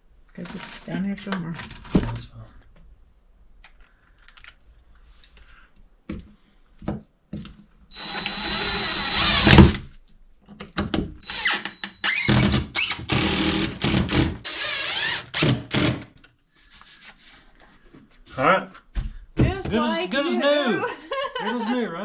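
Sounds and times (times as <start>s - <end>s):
power drill whining: 7.9s - 9.8s, 11.2s - 16.1s.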